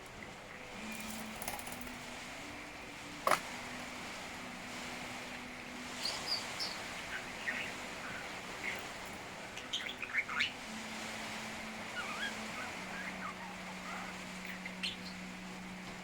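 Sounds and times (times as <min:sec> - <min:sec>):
bird chirping: 0:06.0 - 0:08.9, 0:09.5 - 0:10.6, 0:11.9 - 0:15.3.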